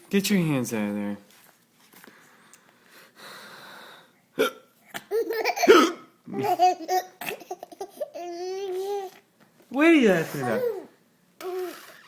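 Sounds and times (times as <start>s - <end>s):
man hiccuping: 4.4s - 4.7s
baby laughing: 4.9s - 9.2s.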